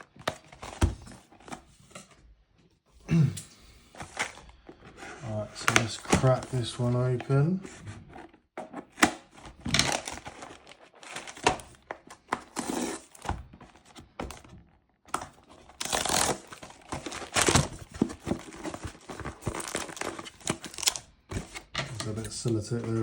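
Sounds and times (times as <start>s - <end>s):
plastic shrink-wrap tearing and crinkling: 9.6s - 11.9s, 15.8s - 21.1s.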